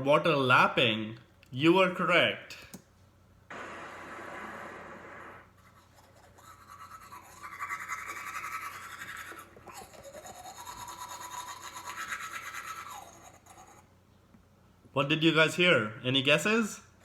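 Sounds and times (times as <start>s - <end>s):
short hiss: 3.5s - 5.6s
teeth being brushed: 5.6s - 13.8s.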